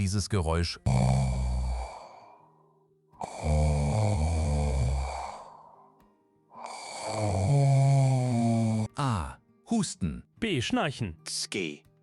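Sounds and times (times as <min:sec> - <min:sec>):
person snoring: 0:00.8 - 0:09.1.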